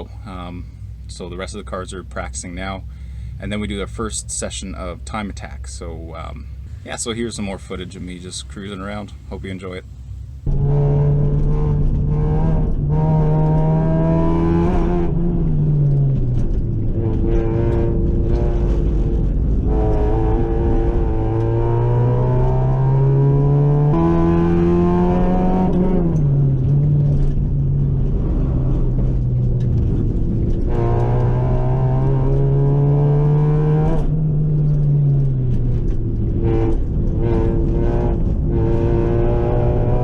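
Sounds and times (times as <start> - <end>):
car engine revving: 0.0 - 40.0.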